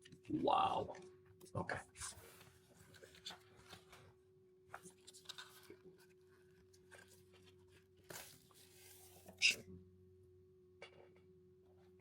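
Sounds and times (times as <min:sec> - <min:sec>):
faint steady hum: 0:00.0 - 0:12.0
cardboard packaging handled: 0:04.8 - 0:09.4.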